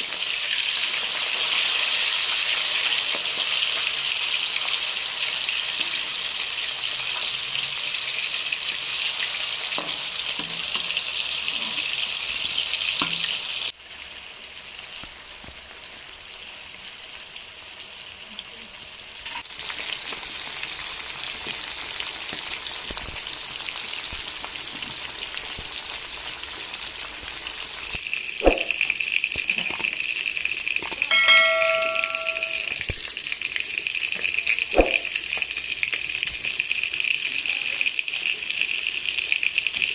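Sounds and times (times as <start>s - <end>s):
chicken sizzling in hot oil: 0.0s - 39.9s
brief ringing tone: 30.9s - 32.8s.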